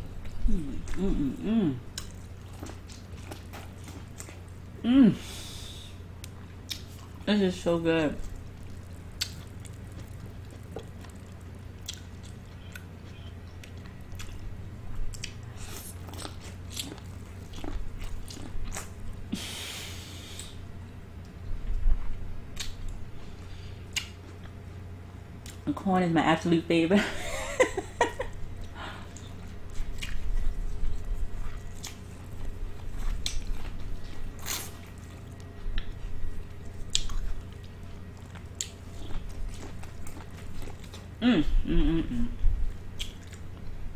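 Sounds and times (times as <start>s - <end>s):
crunchy chewing of corn: 0.0s - 4.8s, 6.2s - 7.3s, 8.2s - 19.3s, 28.2s - 41.2s, 42.7s - 43.9s
steady low hum: 0.0s - 43.9s.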